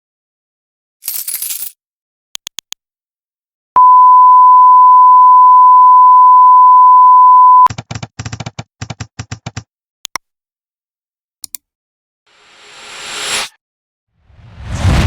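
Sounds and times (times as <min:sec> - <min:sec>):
electronic beep tone: 0:03.8 - 0:07.7.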